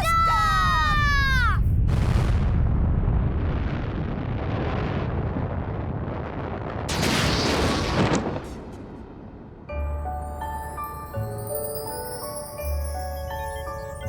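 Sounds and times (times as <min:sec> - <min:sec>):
rocket engine rumbling rush: 0:00.6 - 0:09.7.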